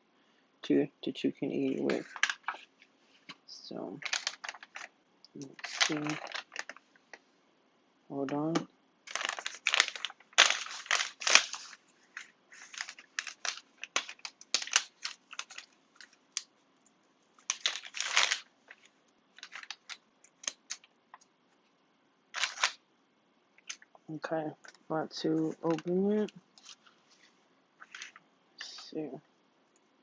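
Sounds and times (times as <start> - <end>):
plastic food pouch crinkling: 1.8 - 2.7, 4.0 - 6.8, 8.5 - 16.5, 17.4 - 21.2, 22.4 - 22.8, 23.6 - 24.0, 25.5 - 26.8.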